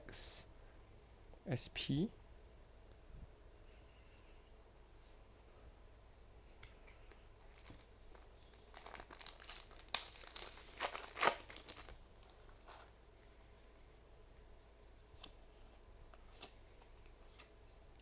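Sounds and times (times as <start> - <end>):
foil wrapper crinkling and tearing: 7.1 - 13.0.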